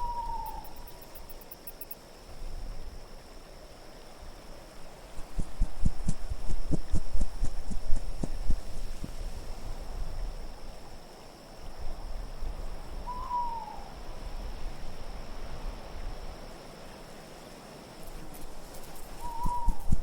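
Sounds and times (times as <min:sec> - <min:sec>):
owl hoot: 0:00.0 - 0:00.9, 0:13.0 - 0:13.9, 0:19.1 - 0:20.0
wind gusting: 0:05.0 - 0:10.5, 0:18.2 - 0:20.0.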